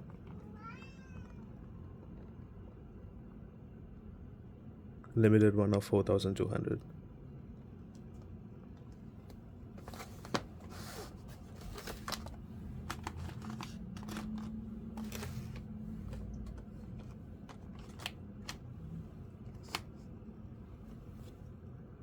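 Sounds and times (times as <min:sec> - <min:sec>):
packaging rustling and crinkling: 0:09.8 - 0:18.8, 0:19.4 - 0:20.0.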